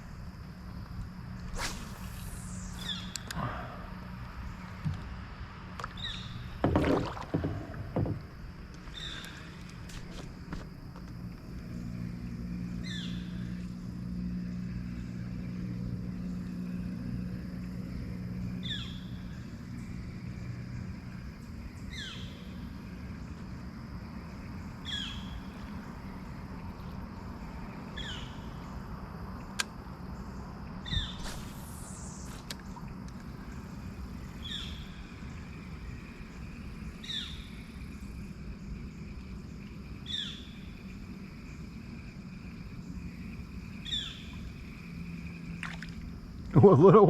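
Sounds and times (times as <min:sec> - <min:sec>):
low hum of distant motor: 0:00.0 - 0:47.0
thump: 0:06.6 - 0:08.2.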